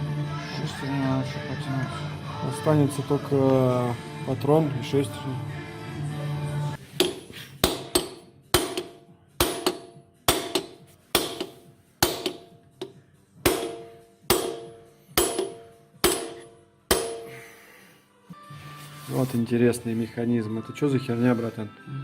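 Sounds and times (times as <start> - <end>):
hammer striking steel: 6.9 - 17.6.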